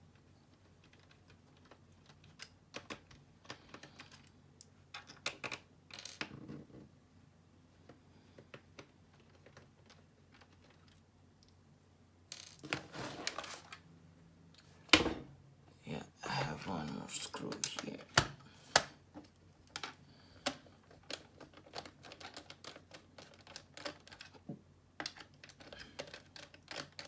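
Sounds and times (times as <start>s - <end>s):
brief rustling scrapes: 12.6s - 13.8s.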